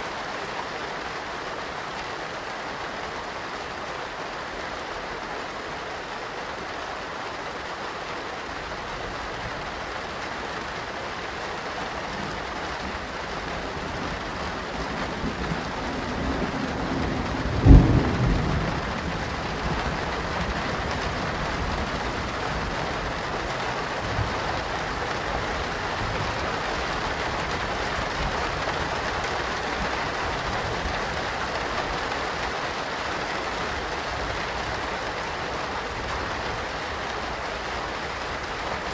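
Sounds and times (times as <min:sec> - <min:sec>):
steady rain: 0:00.0 - 0:38.9
thunder rumble and clap: 0:15.0 - 0:22.7.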